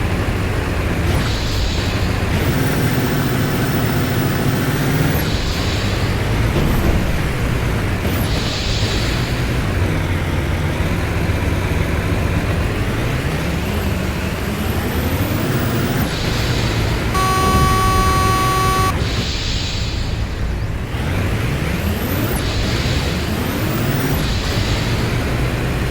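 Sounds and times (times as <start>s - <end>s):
heavy vehicle engine running: 0.0s - 25.9s
vehicle horn blast: 17.1s - 19.1s.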